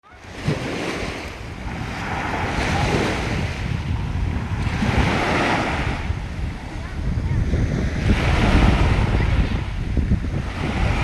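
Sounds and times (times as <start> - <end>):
ocean surf washing onto beach: 0.0 - 11.0
wind rumbling on microphone: 0.0 - 11.0.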